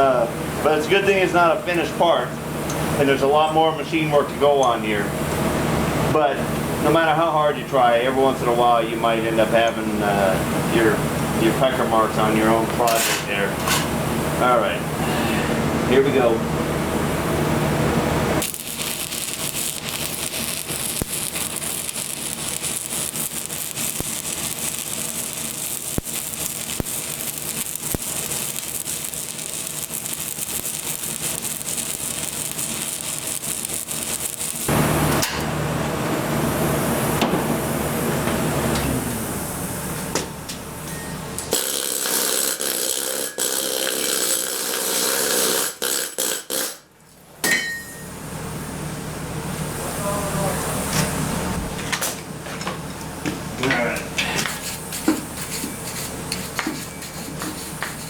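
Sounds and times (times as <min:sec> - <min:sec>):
welding arc crackling: 0:17.2 - 0:35.4, 0:41.5 - 0:46.8, 0:53.1 - 0:58.0.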